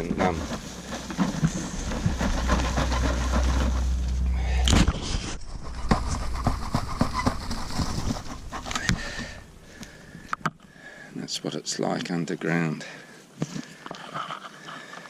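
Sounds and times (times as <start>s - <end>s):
low rumble: 0.0s - 10.4s
roots and soil crackling: 0.0s - 12.2s.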